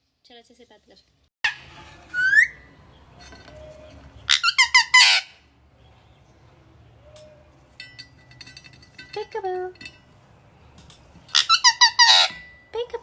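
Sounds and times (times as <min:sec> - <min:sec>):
parrot squeaking calls: 0:01.5 - 0:02.7, 0:03.6 - 0:05.4, 0:11.3 - 0:12.5.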